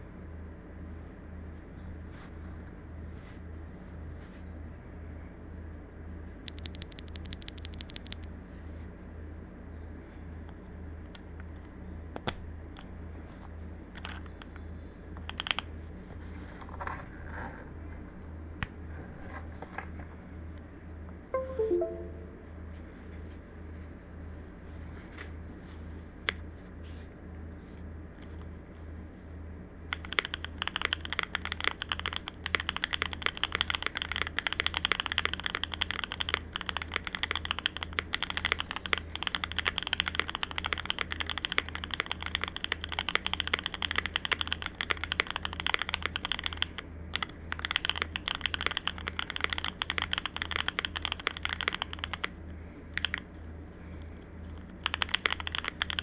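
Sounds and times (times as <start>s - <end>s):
mechanical keyboard typing: 6.5s - 8.3s, 15.3s - 15.6s, 29.9s - 52.4s, 53.0s - 53.3s, 54.8s - 56.0s.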